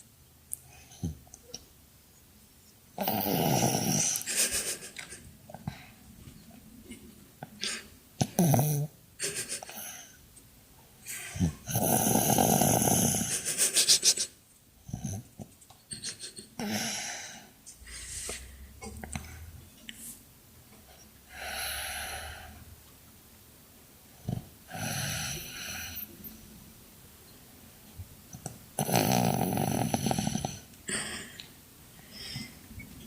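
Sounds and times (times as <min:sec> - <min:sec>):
person snoring: 0:03.0 - 0:04.3, 0:11.3 - 0:13.6, 0:24.3 - 0:26.1, 0:28.8 - 0:31.2.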